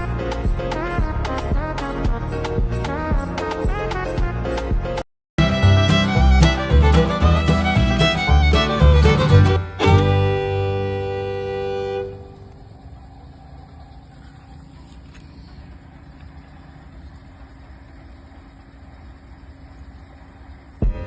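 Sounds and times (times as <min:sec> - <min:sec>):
held horn-like tone: 0:09.5 - 0:12.6
faint steady hum: 0:09.6 - 0:21.0.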